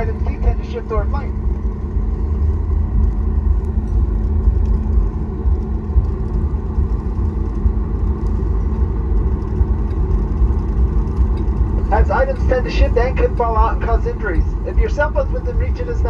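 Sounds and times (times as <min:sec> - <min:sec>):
aircraft taxiing rumble: 0:00.0 - 0:16.0
faint steady hum: 0:00.0 - 0:16.0.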